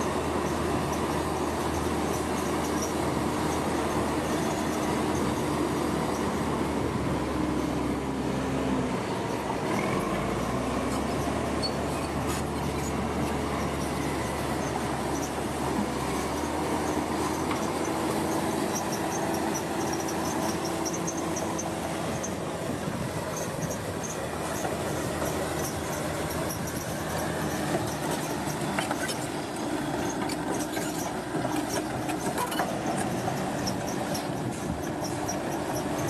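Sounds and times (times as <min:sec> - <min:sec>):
heavy machinery engine running: 0:00.0 - 0:36.0
faint high squeaks: 0:09.2 - 0:22.4, 0:23.3 - 0:36.0.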